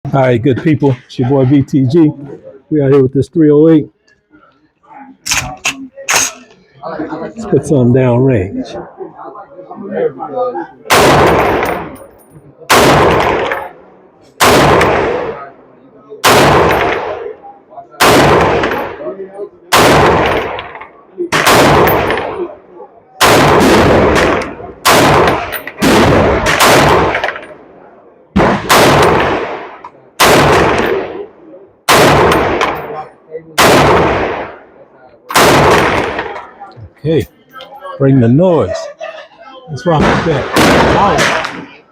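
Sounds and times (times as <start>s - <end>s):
gunshots with long echo: 10.9s - 12.0s, 12.7s - 15.6s, 16.2s - 17.4s, 18.0s - 22.6s, 23.2s - 36.5s, 39.9s - 41.7s.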